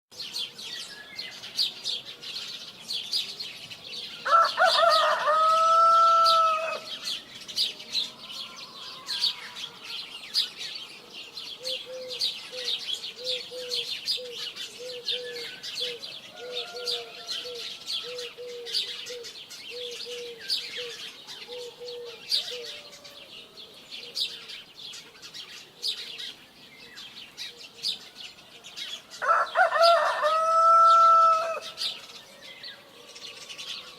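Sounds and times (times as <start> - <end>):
small birds chirping: 0.1 - 33.9
rooster crowing: 4.2 - 7.0, 8.1 - 10.1, 16.3 - 18.4, 22.1 - 23.4, 29.2 - 31.8.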